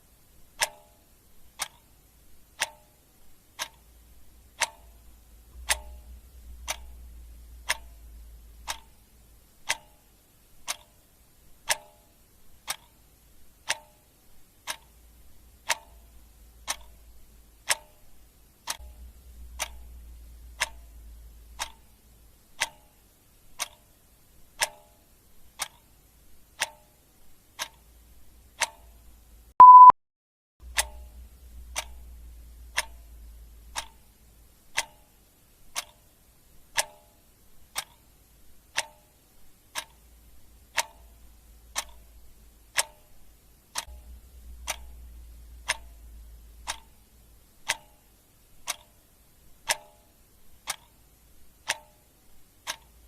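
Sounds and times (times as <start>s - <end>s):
clock ticking: 0.4s - 29.9s, 30.6s - 53.0s
short loud beep: 29.6s - 30.0s.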